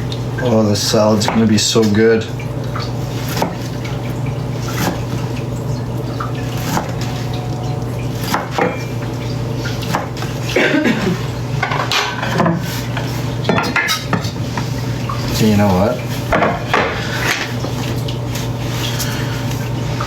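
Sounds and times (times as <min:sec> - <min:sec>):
knife chopping on cutting board: 0:03.3 - 0:03.7, 0:04.7 - 0:05.0, 0:06.6 - 0:07.0, 0:08.2 - 0:08.8, 0:09.9 - 0:10.3
dishes clinking: 0:06.7 - 0:09.3, 0:09.9 - 0:14.7, 0:16.3 - 0:17.8.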